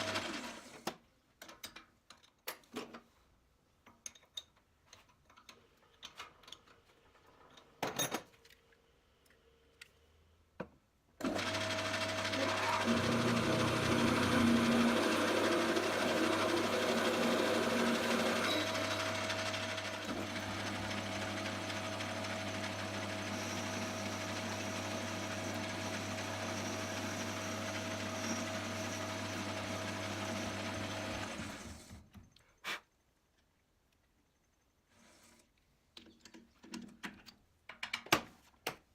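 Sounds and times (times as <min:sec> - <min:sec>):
click: 0:08.5 - 0:10.0
machine tool motor humming: 0:11.3 - 0:31.6.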